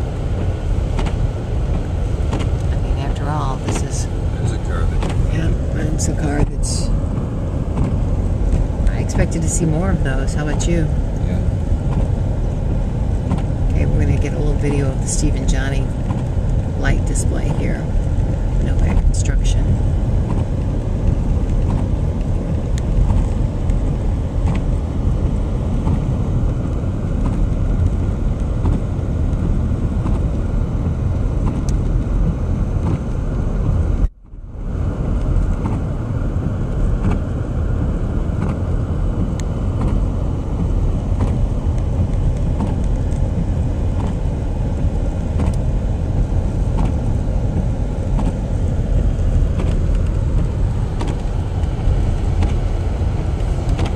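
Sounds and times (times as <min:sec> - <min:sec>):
car road and engine rumble: 0:00.0 - 0:53.9
faint whine: 0:02.6 - 0:07.0.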